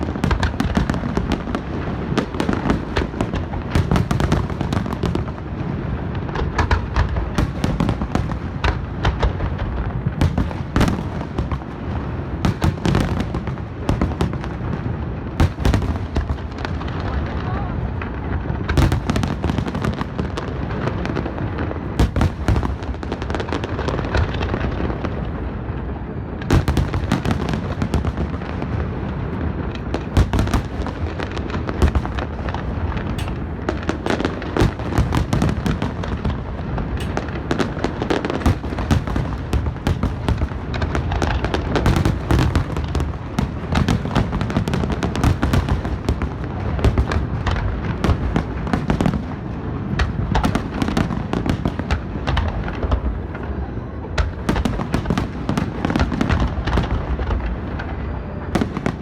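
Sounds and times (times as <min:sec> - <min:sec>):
firework cracks: 0:00.0 - 0:53.5, 0:54.1 - 0:59.0
continuous low rumble: 0:00.0 - 0:59.0
firework shells bursting: 0:29.8 - 0:44.2.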